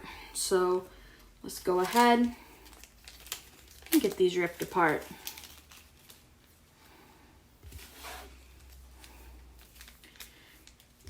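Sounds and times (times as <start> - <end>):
handling wipe packets: 0.3 - 11.0
packets tearing apart: 1.8 - 6.2.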